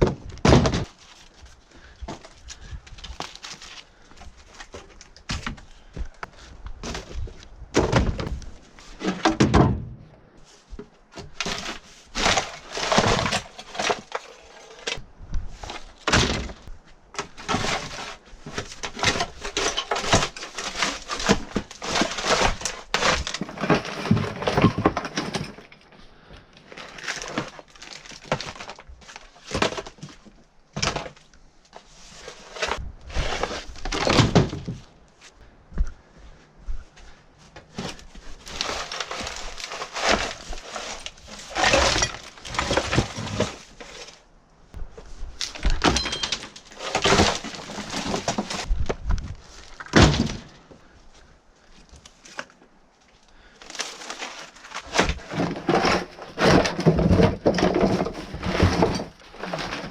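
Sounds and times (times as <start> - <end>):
debris cracking and thunking: 0.0 - 10.0, 11.1 - 25.9, 37.7 - 44.1, 45.4 - 50.6, 53.4 - 59.9.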